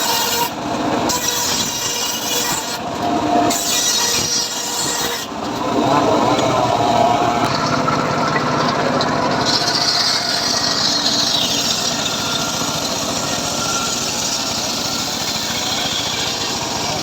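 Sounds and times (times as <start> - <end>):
circular saw cutting wood: 0.0 - 17.0.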